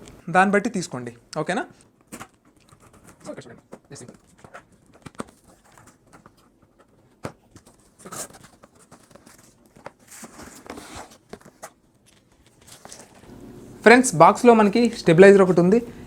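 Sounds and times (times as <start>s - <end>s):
packaging rustling: 1.8s - 13.3s.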